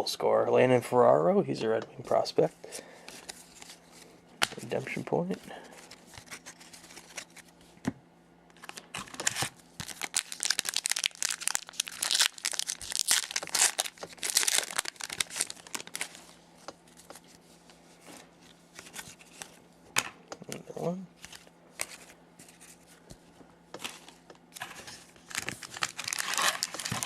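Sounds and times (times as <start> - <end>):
plastic wrapper crinkling and tearing: 8.6 - 16.3, 24.5 - 27.0.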